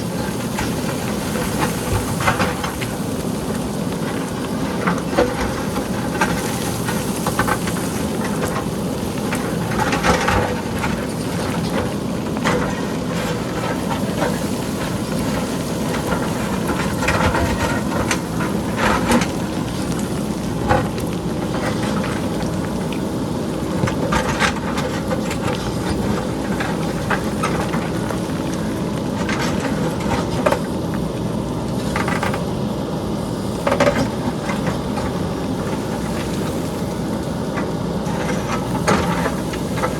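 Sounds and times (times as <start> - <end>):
rocks clattering down hillside: 0.0 - 31.1
diesel engine running: 0.0 - 39.9.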